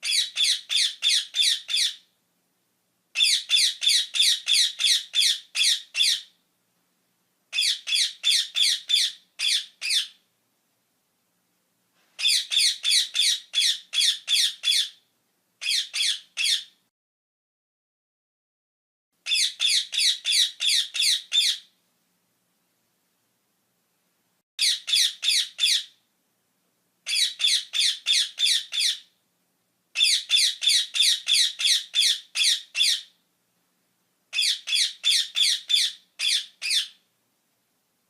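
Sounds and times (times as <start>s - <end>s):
parrot squawking harshly: 0.0s - 2.1s, 3.2s - 6.3s, 7.5s - 10.2s, 12.2s - 15.0s, 15.6s - 16.8s, 19.2s - 21.7s, 24.6s - 26.0s, 27.0s - 29.1s, 30.0s - 33.2s, 34.3s - 37.0s.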